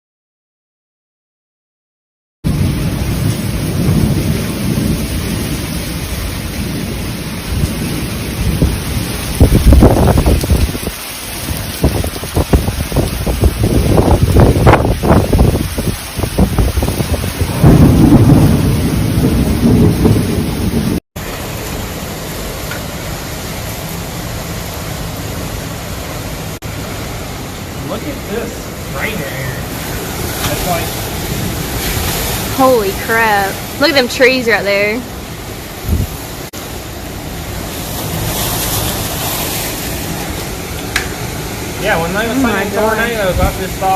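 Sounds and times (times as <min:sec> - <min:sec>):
low thunder rumble: 0:02.5 - 0:21.0
heavy rain hissing: 0:02.5 - 0:43.9
wind: 0:02.5 - 0:43.9.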